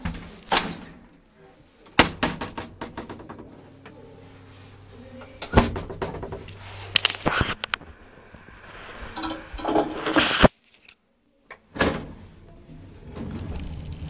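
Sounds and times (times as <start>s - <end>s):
elevator doors banging shut: 0.0s - 1.1s, 2.0s - 4.0s, 5.3s - 6.6s
low mains hum: 0.0s - 10.4s.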